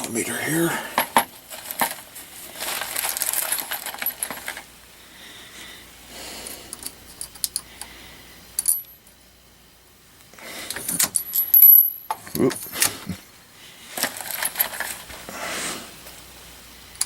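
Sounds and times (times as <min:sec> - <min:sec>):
metal cartridge cases clinking: 0:02.6 - 0:04.7.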